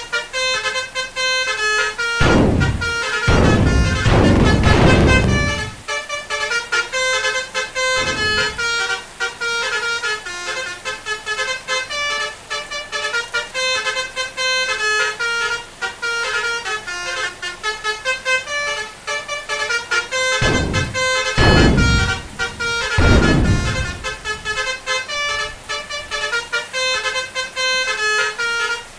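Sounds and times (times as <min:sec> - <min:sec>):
musical air horn tune: 0:01.8 - 0:05.8, 0:07.8 - 0:10.0, 0:18.6 - 0:28.8
loud rush of noise: 0:02.2 - 0:05.8, 0:08.0 - 0:08.8, 0:20.4 - 0:24.7.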